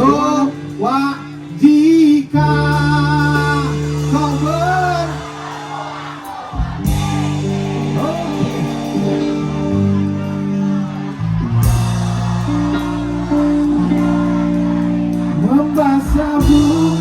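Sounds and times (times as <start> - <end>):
held instrument chords: 0.0 - 17.0
person singing: 0.0 - 17.0.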